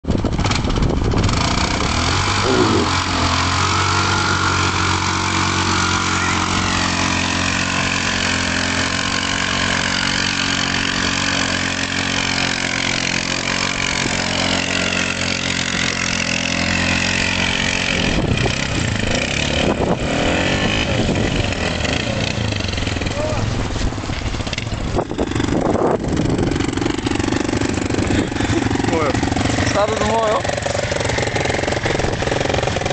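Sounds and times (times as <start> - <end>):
vehicle engine idling: 21.0 - 32.9.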